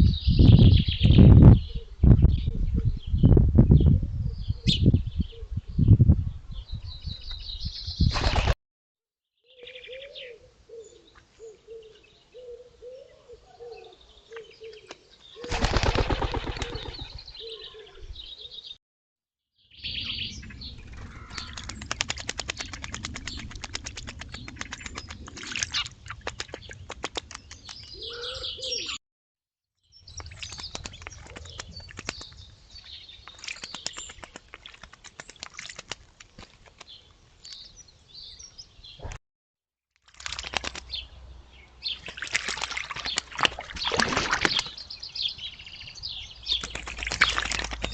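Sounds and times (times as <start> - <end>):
wing flapping: 8.1 - 8.6, 15.4 - 17.3, 20.7 - 27.9, 30.2 - 32.4, 33.3 - 36.9, 40.1 - 40.9, 46.6 - 47.9
bird chirps and calls: 9.4 - 15.6, 16.5 - 18.8, 19.7 - 23.5, 24.3 - 29.0.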